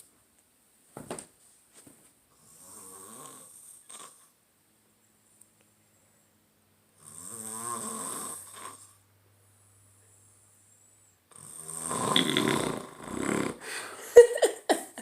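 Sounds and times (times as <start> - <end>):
man snoring loudly: 2.4 - 4.2, 7.0 - 9.0, 11.3 - 13.6.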